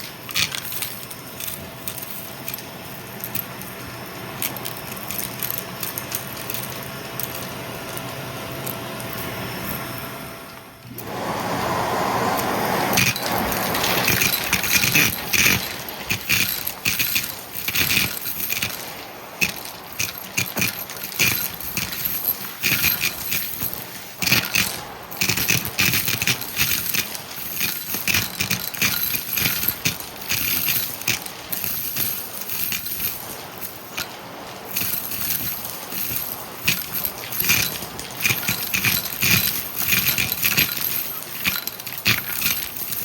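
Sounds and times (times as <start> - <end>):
vacuum cleaner running: 7.0 - 43.0
debris rattling into vacuum: 10.9 - 43.0.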